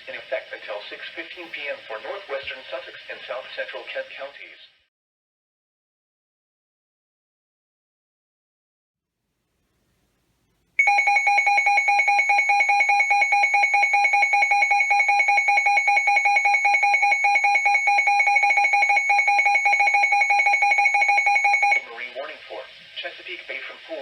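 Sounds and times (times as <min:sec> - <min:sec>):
two-tone alarm: 0:10.8 - 0:21.8.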